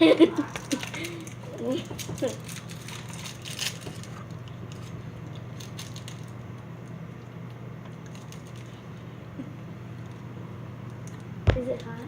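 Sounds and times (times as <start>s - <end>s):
steady low hum: 0.0s - 12.0s
small objects clicking and rattling: 0.5s - 4.1s.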